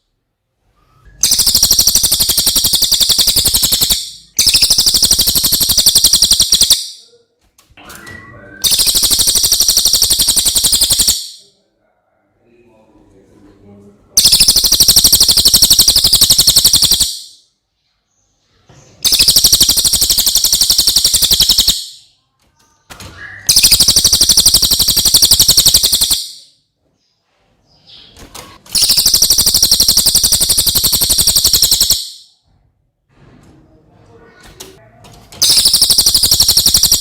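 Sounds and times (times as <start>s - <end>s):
bird high-pitched trills: 1.2s - 7.0s, 8.0s - 11.5s, 14.2s - 17.4s, 19.0s - 22.1s, 23.2s - 26.5s, 28.7s - 32.4s, 35.4s - 37.0s.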